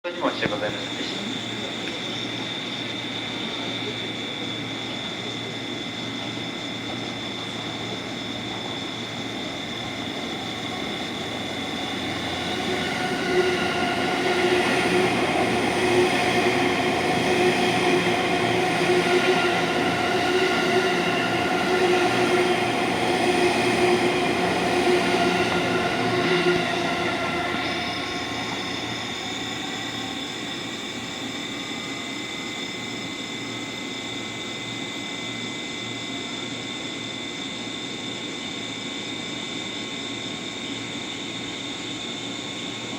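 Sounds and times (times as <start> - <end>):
train rail noise: 0.1 - 33.8
train motor whine: 0.3 - 37.6.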